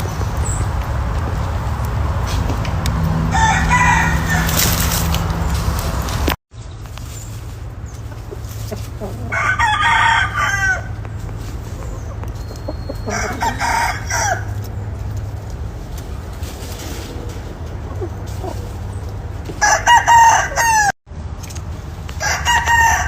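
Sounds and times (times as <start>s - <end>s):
rooster crowing: 3.2s - 4.9s, 9.3s - 11.0s, 12.9s - 14.6s, 19.6s - 21.0s, 22.2s - 23.0s.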